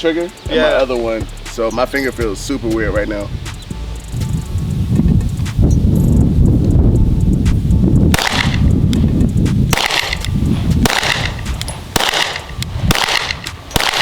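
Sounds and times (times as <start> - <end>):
pistol shots with echo: 8.2 - 8.6, 9.7 - 10.2, 10.8 - 14.0.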